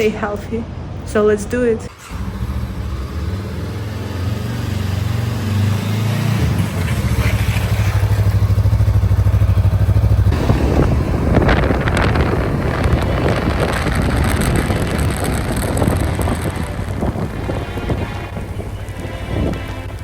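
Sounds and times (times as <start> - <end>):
small motorbike engine running: 2.0 - 20.0
wind noise on microphone: 6.4 - 20.0.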